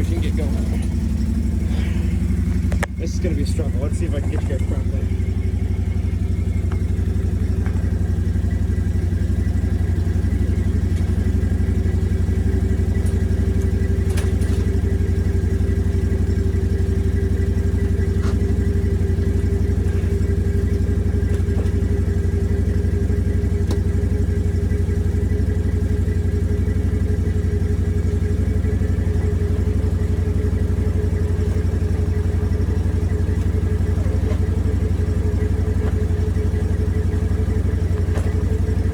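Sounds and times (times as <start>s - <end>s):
metal clanks: 0.0s - 15.8s
vehicle engine idling: 0.0s - 38.9s.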